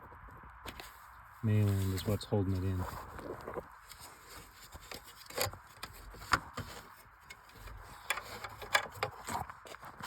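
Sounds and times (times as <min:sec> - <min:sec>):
plastic connectors rubbing and scraping: 0:01.6 - 0:10.0.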